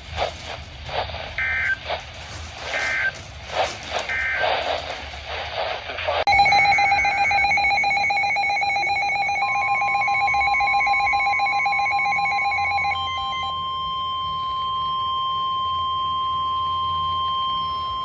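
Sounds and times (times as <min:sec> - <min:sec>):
buzzing two-tone alert signal: 0:06.3 - 0:18.0
steady single-pitched alarm tone: 0:06.3 - 0:18.0.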